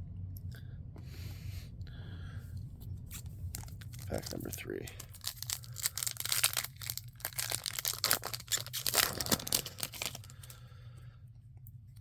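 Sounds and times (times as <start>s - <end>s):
wrapper tearing and crackling: 3.1s - 10.6s.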